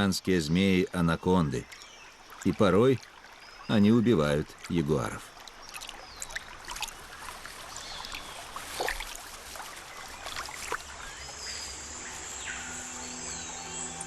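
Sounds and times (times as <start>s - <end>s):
water splashing in a river: 1.3s - 11.9s
birds chirping and whistling: 10.2s - 14.0s
music: 11.5s - 14.0s.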